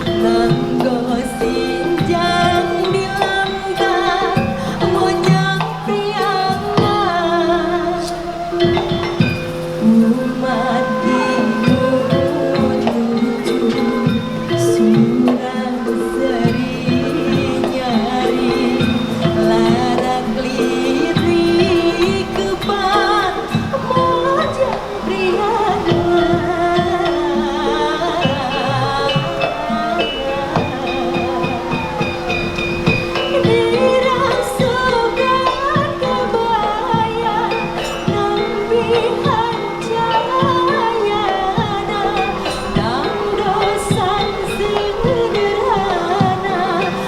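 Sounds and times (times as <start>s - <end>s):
bending melody line: 0.0s - 47.0s
metallophone and gong notes: 0.0s - 47.0s.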